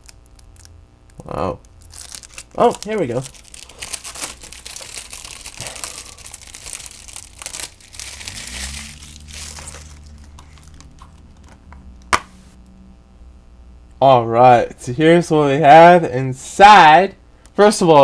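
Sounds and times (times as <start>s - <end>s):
plastic wrap crinkling and tearing: 0.0s - 11.7s.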